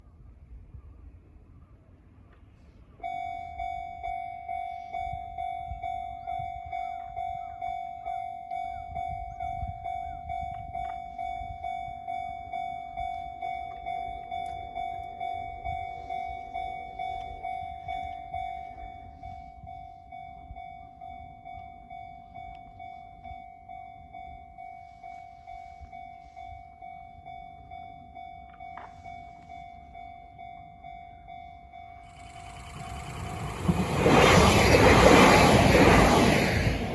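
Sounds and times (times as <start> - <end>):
level-crossing alarm dinging: 3.0 - 36.9.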